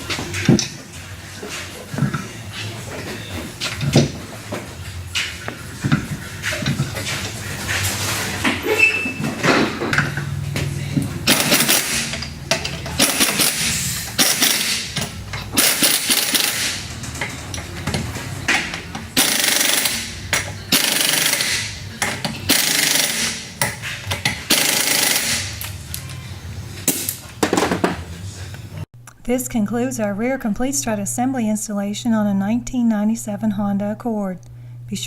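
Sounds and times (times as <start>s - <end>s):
impact wrench rattling: 11.2s - 25.7s.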